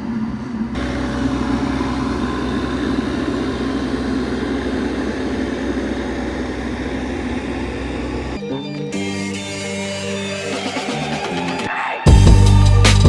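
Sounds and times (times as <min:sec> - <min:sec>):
diesel engine rumbling: 0:00.0 - 0:08.4.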